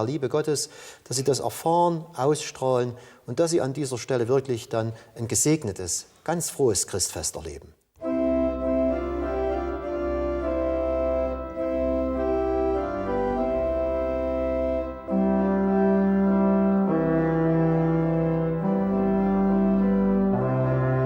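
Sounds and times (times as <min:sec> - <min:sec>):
church organ chords: 0:08.0 - 0:21.0.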